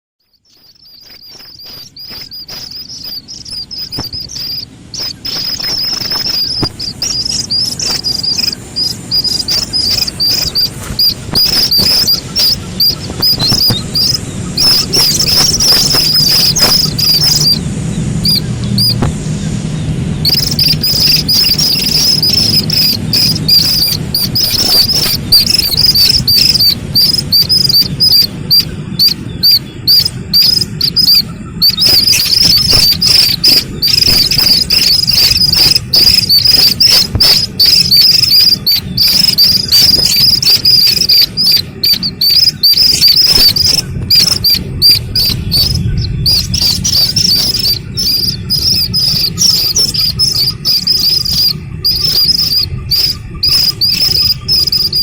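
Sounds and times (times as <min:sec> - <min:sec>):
bird chicks peeping: 0:00.2 - 0:55.0.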